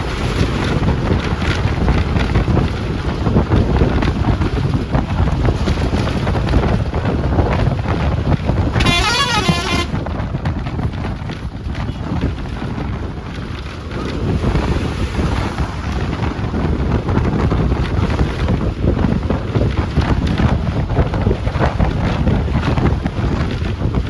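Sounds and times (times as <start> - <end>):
bus engine and road noise: 0.0 - 24.0
wind buffeting microphone: 0.0 - 24.0.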